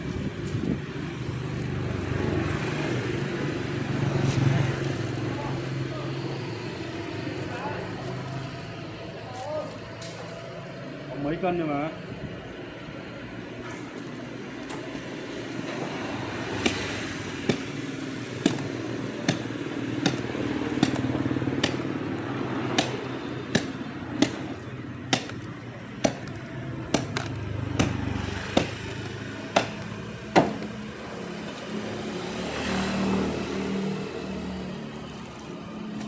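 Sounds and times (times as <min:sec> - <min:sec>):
street traffic: 0:00.0 - 0:36.0
motorbikes passing: 0:00.1 - 0:09.2, 0:14.3 - 0:36.0
cleaver chopping on wooden block: 0:16.5 - 0:30.7.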